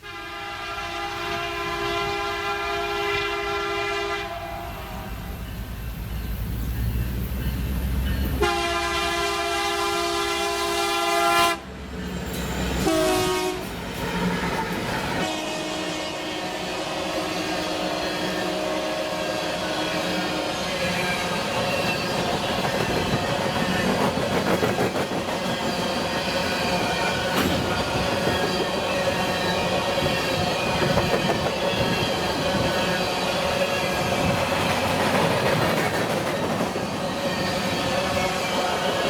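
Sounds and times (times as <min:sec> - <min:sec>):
locomotive air horn blasts: 0:00.0 - 0:05.3, 0:08.4 - 0:11.7, 0:12.8 - 0:14.3, 0:15.2 - 0:20.6
passing train rumble: 0:00.0 - 0:39.0.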